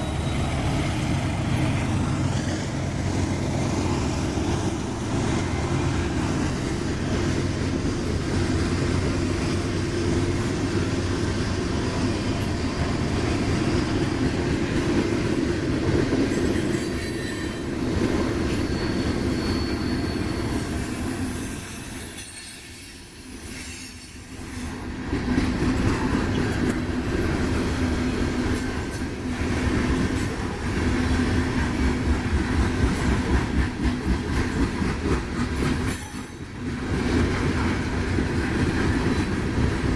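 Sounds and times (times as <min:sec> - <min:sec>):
train wheels rumbling on rail: 0:00.0 - 0:39.9
wheel squeal: 0:16.4 - 0:24.8.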